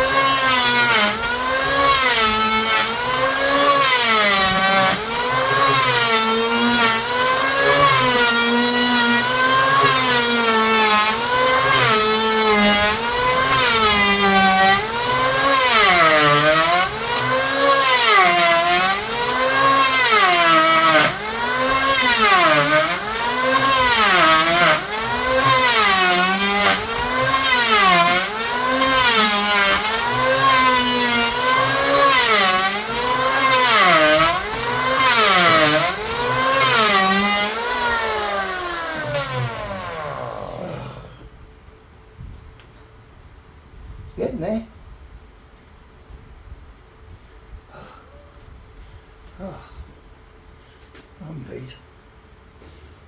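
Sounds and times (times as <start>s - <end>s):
electric power planer cutting wood: 0.0s - 41.2s.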